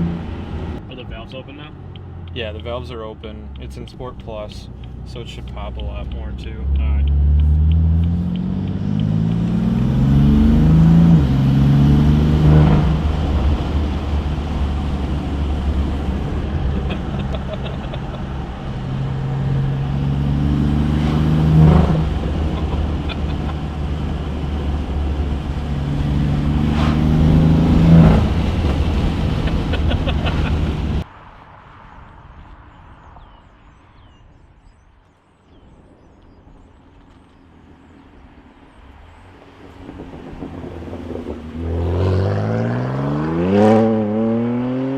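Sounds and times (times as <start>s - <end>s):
car engine accelerating hard: 0.0s - 31.0s, 39.1s - 44.9s
exhaust crack: 0.0s - 31.0s.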